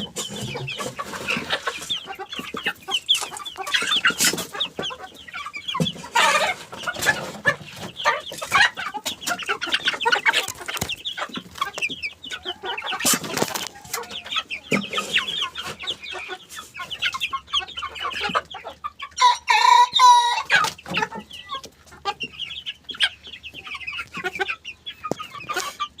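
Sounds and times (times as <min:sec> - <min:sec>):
young rooster clucking and cheeping: 0:00.0 - 0:26.0
rooster crowing: 0:19.2 - 0:20.5.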